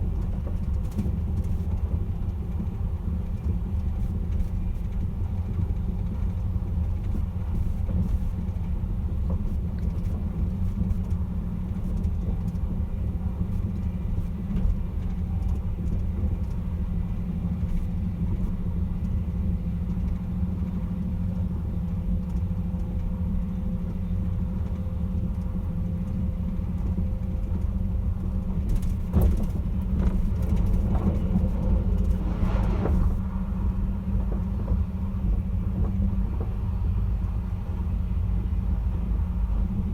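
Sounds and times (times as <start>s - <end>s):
train rumbling: 0.0s - 39.9s
higher-pitched train noise: 30.8s - 35.4s.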